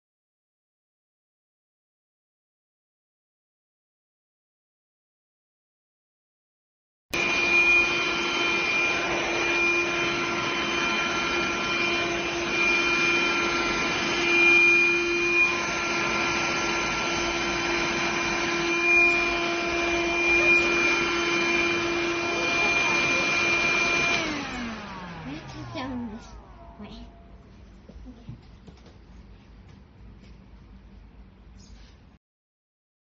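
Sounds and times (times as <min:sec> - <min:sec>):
vacuum cleaner motor whine: 0:07.2 - 0:28.9.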